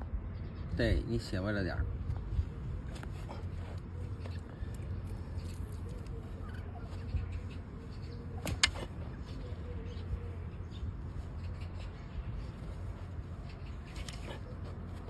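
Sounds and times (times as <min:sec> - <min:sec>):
sharp click: 0:08.4 - 0:08.9.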